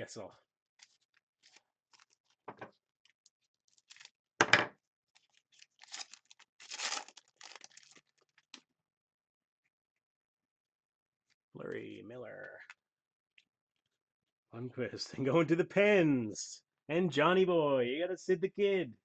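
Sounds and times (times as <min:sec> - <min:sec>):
wrapper crinkling: 0:00.8 - 0:02.4, 0:03.4 - 0:04.2, 0:05.1 - 0:08.6
sharp wrapper tear: 0:05.6 - 0:08.4.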